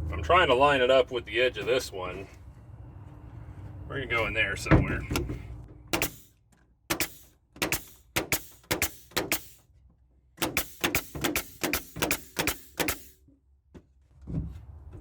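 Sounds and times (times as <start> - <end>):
nails hammered into wood: 5.9 - 6.3, 6.9 - 9.6, 10.4 - 13.2.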